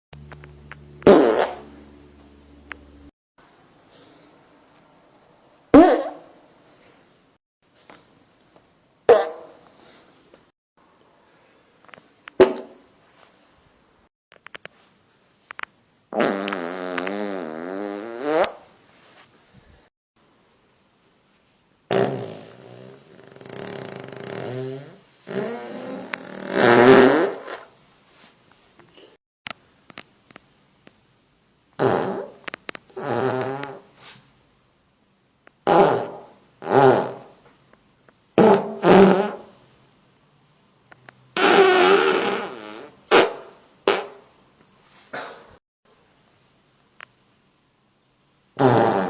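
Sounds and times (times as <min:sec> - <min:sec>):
long buzzing farts: 0:00.2 - 0:02.3, 0:16.1 - 0:18.7, 0:21.9 - 0:27.7, 0:31.8 - 0:33.9, 0:35.6 - 0:37.4, 0:38.4 - 0:39.6, 0:41.4 - 0:44.2, 0:48.6 - 0:49.0.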